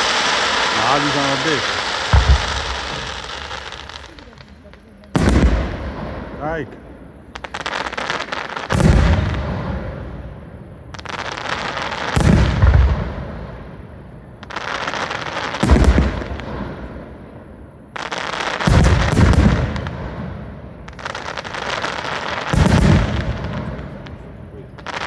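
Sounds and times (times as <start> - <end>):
firework shell launch: 0.0 - 4.2
firework burst deep boom: 0.0 - 14.5, 15.2 - 18.0, 18.6 - 21.4, 22.5 - 25.0.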